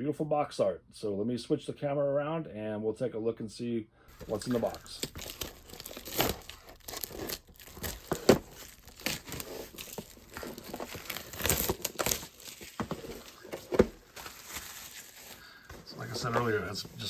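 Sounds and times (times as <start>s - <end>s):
plastic packaging crinkling and tearing: 4.2s - 17.0s.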